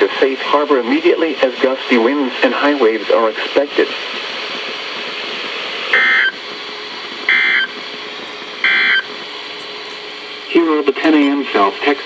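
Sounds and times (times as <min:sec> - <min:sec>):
radio hiss: 0:00.0 - 0:12.0
buzzy data tone bursts: 0:05.9 - 0:11.6.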